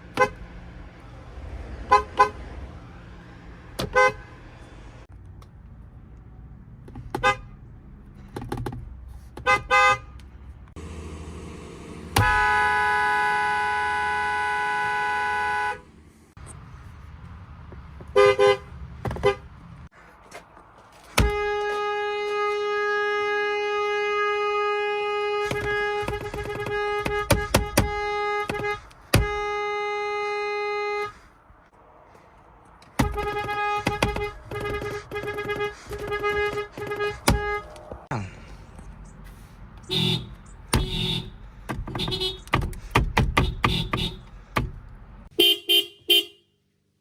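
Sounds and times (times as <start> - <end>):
car horns beeping: 0.0 - 0.5, 1.9 - 2.5, 3.8 - 4.5, 7.0 - 7.6, 9.4 - 10.3, 12.0 - 16.0, 18.1 - 19.6, 21.1 - 31.3, 32.9 - 38.1, 38.9 - 46.6
traffic noise: 0.0 - 47.0.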